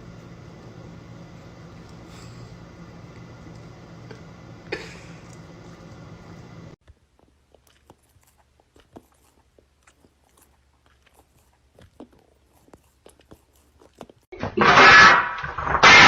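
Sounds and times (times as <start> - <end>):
animal chewing food: 5.0 - 14.3.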